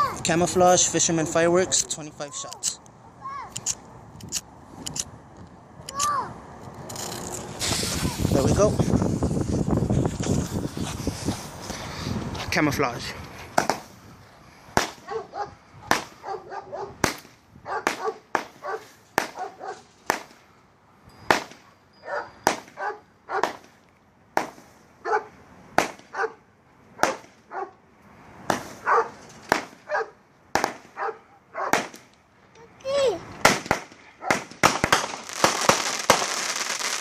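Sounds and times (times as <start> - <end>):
fireworks popping: 6.7 - 11.8, 13.5 - 13.9, 14.8 - 15.0, 15.9 - 16.2, 17.0 - 19.4, 20.0 - 20.4, 21.3 - 21.6, 22.4 - 22.8, 24.4 - 24.8, 28.4 - 29.9, 30.5 - 31.0, 31.7 - 32.1, 33.4 - 37.0
dog barking: 15.0 - 15.6, 16.2 - 17.0, 17.7 - 19.9, 22.0 - 23.6, 25.0 - 25.3, 26.1 - 26.4, 27.0 - 27.8, 28.8 - 29.2, 29.9 - 30.2, 31.0 - 31.8.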